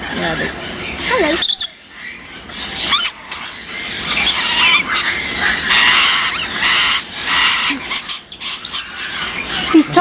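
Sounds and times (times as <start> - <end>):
parrots squawking: 0.0 - 10.0.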